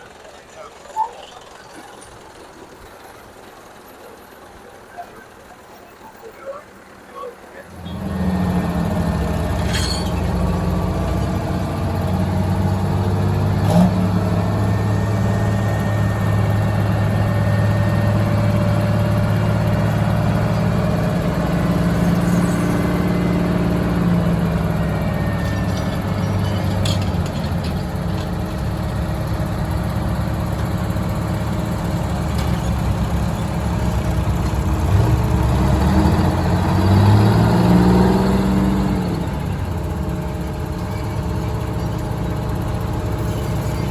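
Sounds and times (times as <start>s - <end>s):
construction machine engine revving: 7.6s - 43.9s.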